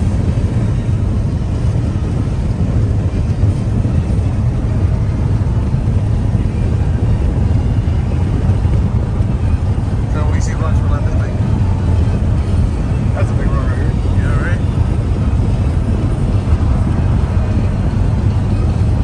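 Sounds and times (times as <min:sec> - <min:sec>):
road and wind noise in car: 0:00.0 - 0:19.0.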